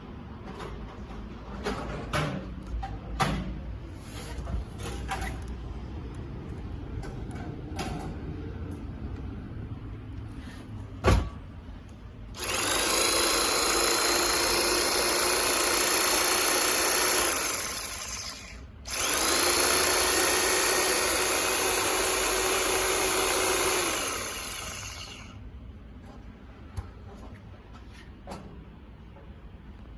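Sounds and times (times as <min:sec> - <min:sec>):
electric hedge trimmer running: 0:12.4 - 0:25.4.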